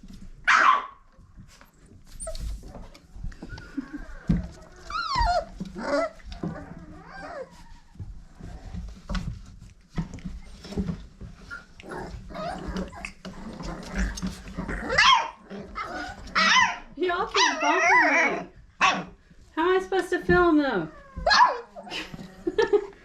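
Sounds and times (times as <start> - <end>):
knocks and scuffling: 1.1 - 15.0
puppies whimpering and yipping: 2.0 - 9.0, 11.4 - 18.6.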